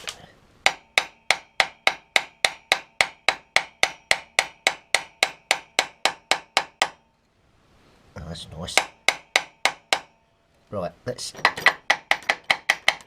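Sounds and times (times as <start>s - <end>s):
hammer tapping on steel: 0.7s - 7.1s, 8.7s - 10.2s, 11.3s - 13.0s.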